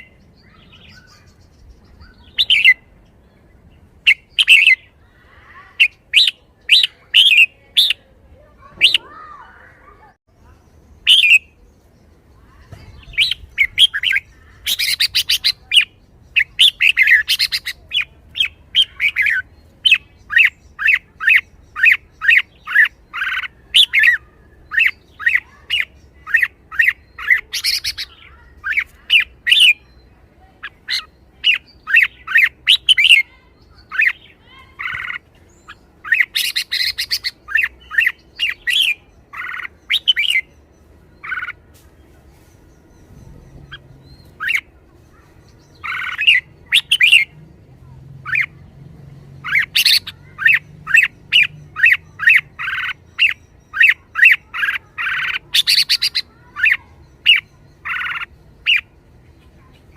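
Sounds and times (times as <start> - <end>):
bird chattering: 0.0 - 3.1, 3.9 - 41.8, 42.4 - 59.9
bird singing whistled notes: 42.4 - 47.4, 49.5 - 59.9.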